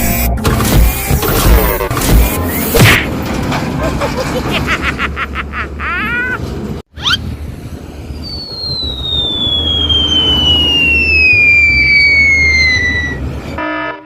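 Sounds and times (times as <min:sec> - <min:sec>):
low vehicle rumble: 0:03.1 - 0:13.6
short rising sweep: 0:07.0 - 0:13.4
falling bomb whistle: 0:08.1 - 0:13.2.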